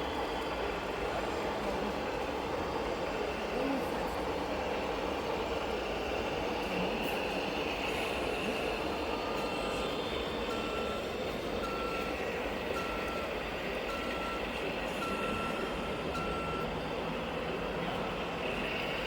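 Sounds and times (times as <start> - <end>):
reversing beeper: 13.9 - 16.7.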